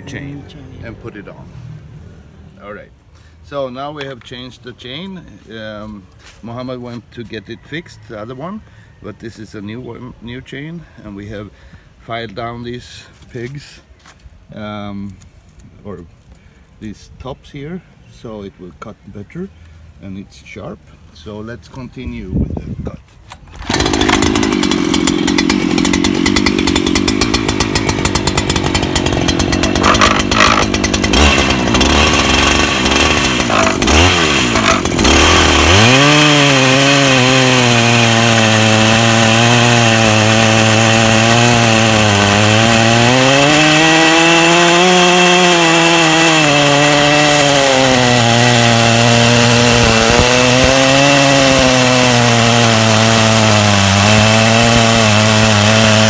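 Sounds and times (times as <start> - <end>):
chainsaw cutting a log: 23.5 - 56.0.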